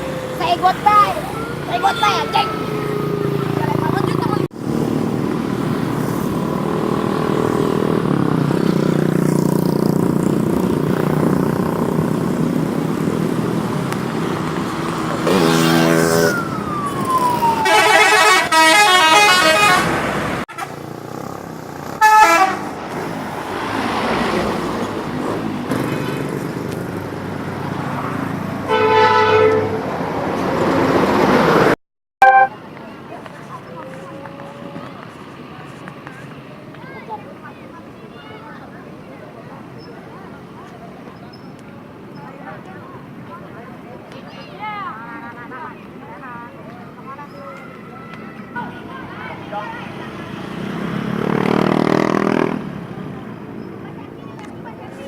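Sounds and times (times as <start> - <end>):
engine and traffic rumble: 0.0 - 55.0
musical bus air horns: 17.6 - 20.7, 22.0 - 22.7, 28.7 - 30.0, 32.2 - 32.5.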